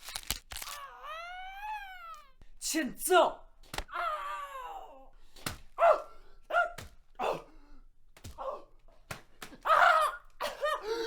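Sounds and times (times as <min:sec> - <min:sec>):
short vocal cries: 0:00.6 - 0:02.4.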